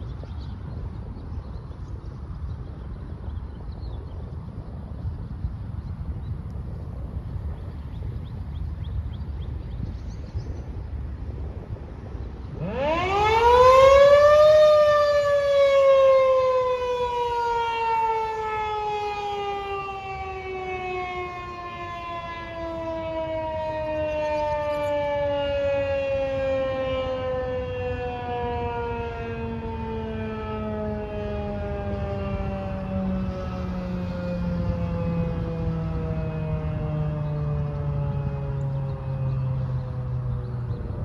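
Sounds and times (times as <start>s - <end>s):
rotating warning siren wailing: 10.7s - 41.0s.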